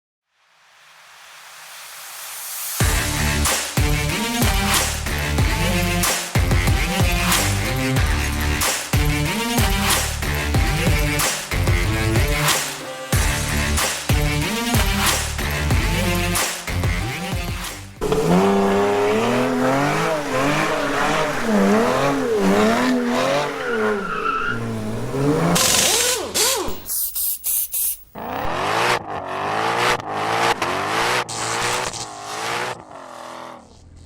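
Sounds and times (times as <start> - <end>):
car engine revving: 18.0 - 26.9, 28.2 - 34.0
tyre squeal: 18.0 - 27.4.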